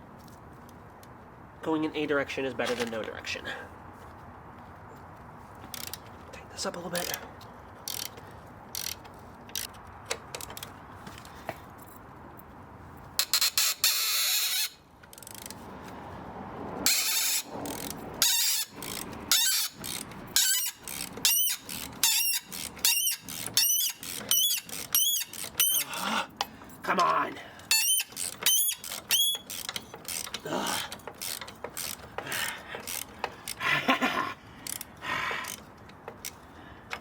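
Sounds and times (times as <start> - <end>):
hand ratchet clicking: 5.7 - 6.1, 6.9 - 10.7, 13.2 - 15.6, 16.9 - 33.6, 34.6 - 37.0
ratchet rattling: 5.7 - 6.1, 6.9 - 10.7, 13.2 - 15.6, 16.9 - 26.6, 27.6 - 33.6, 34.6 - 37.0
bolt squealing: 13.2 - 15.5, 16.9 - 26.0, 27.0 - 33.1.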